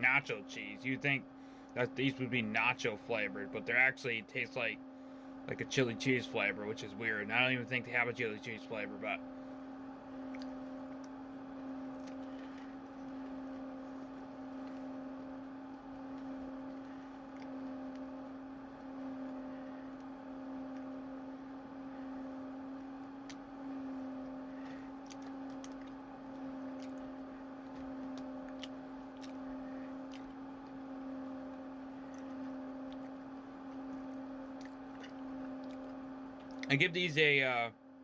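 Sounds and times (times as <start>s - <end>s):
low electrical hum: 0.0s - 38.0s
faint clicks and crunches: 10.2s - 21.2s, 22.7s - 36.8s.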